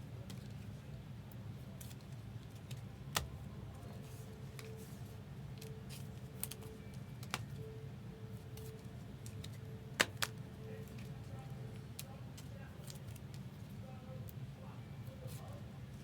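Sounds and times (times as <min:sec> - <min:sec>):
low steady hum: 0:00.0 - 0:16.0
cards clicking and snipping: 0:01.8 - 0:03.4, 0:05.6 - 0:07.6, 0:08.6 - 0:11.1.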